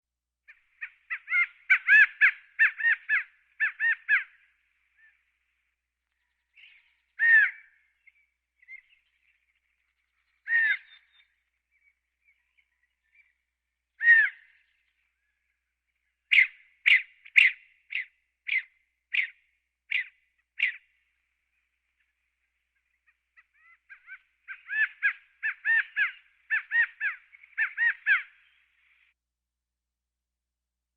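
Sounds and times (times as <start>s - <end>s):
quail calling: 0.7s - 4.5s, 7.2s - 7.8s, 10.4s - 11.2s, 14.0s - 14.6s, 16.3s - 20.8s, 23.0s - 28.4s.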